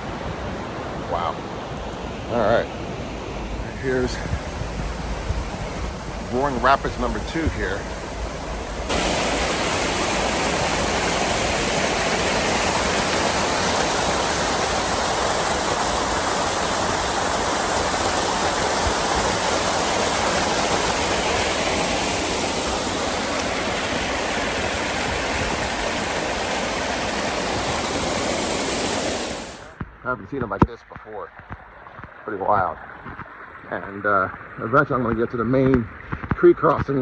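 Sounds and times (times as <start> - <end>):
creek rushing whitewater roar: 3.5 - 29.7.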